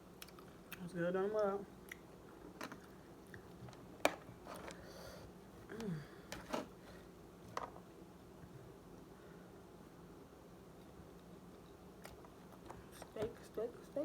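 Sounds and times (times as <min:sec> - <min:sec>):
chewing clicks and smacks: 0:00.2 - 0:00.9, 0:01.8 - 0:02.1
person humming mm: 0:05.7 - 0:06.2.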